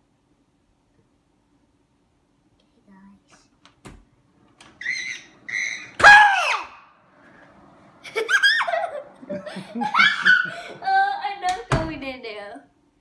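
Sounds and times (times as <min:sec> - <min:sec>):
shrieking: 0:04.8 - 0:06.9, 0:09.8 - 0:11.2
high-pitched squeals: 0:04.8 - 0:07.0
loud scream: 0:04.8 - 0:07.0, 0:09.8 - 0:10.7.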